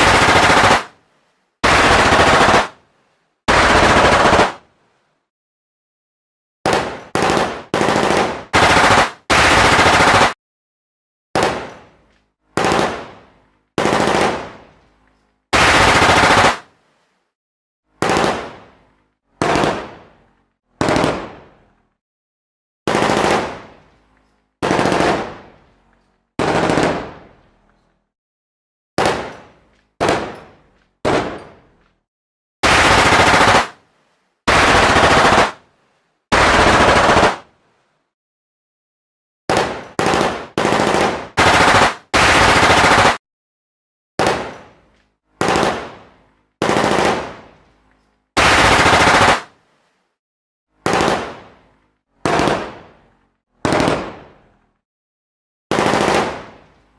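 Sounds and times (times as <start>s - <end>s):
machine gun bursts: 0.0s - 0.9s, 1.6s - 2.8s, 3.5s - 4.6s, 32.6s - 33.8s, 34.5s - 35.6s, 36.3s - 37.4s, 48.4s - 49.5s.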